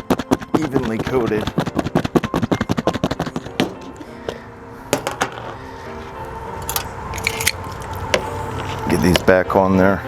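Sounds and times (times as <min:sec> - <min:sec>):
chicken wings shaken in a bowl: 0:00.0 - 0:03.9
faint background music: 0:00.0 - 0:10.0.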